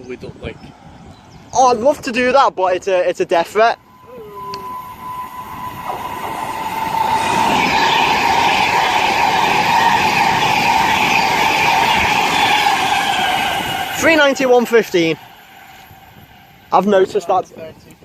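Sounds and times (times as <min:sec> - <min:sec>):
train passing at speed: 0:02.8 - 0:17.8
steady whine: 0:03.2 - 0:17.4.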